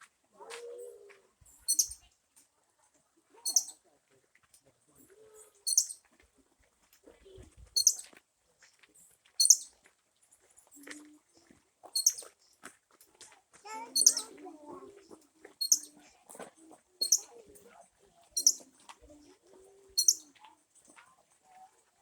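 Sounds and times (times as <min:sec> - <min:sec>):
squirrel chirping calls: 0:01.6 - 0:02.0, 0:03.4 - 0:03.8, 0:05.6 - 0:06.0, 0:07.8 - 0:08.0, 0:09.4 - 0:09.7, 0:11.9 - 0:12.3, 0:13.9 - 0:14.4, 0:15.6 - 0:16.0, 0:17.0 - 0:17.4, 0:18.4 - 0:18.7, 0:20.0 - 0:20.3.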